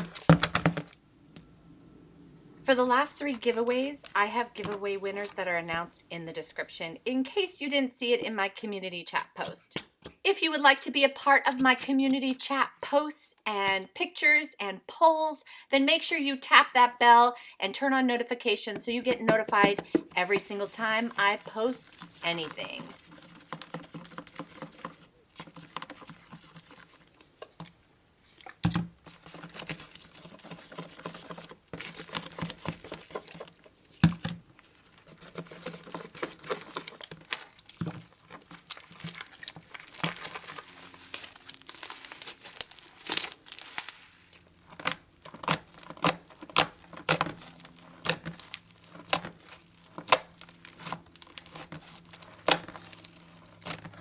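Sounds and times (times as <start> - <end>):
slime squished by hand: 34.9 - 54.0.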